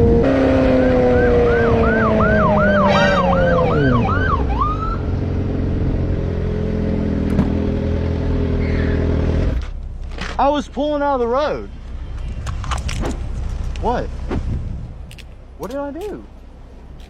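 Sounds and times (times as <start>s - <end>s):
police siren yelps: 0.7s - 5.1s.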